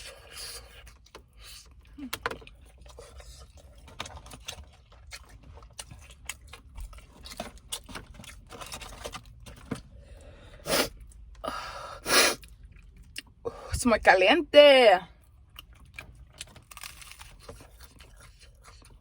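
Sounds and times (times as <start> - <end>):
crunching fried chicken: 0.0 - 11.3, 15.1 - 19.0
wet chewing: 0.0 - 11.4, 12.3 - 13.5, 15.1 - 19.0.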